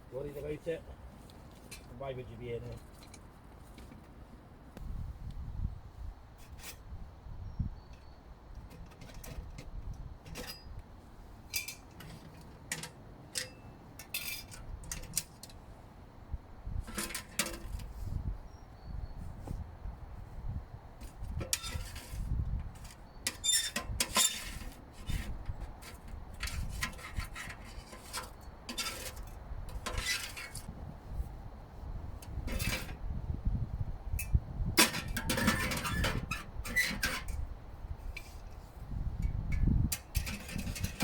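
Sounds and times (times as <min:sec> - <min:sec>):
metal camping gear clinking: 0:11.5 - 0:15.6, 0:34.2 - 0:37.4.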